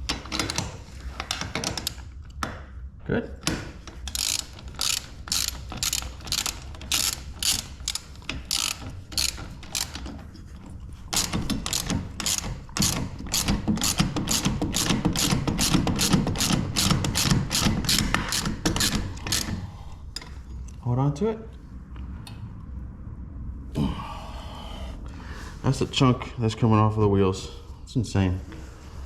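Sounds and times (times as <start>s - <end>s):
ratchet wrench clicking: 4.0s - 10.0s, 11.2s - 19.6s.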